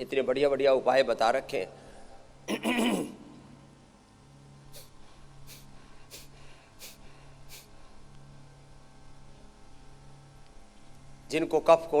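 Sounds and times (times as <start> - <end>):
sharp breaths through the nose: 4.7 - 8.1
man's voiced breath: 4.8 - 7.8.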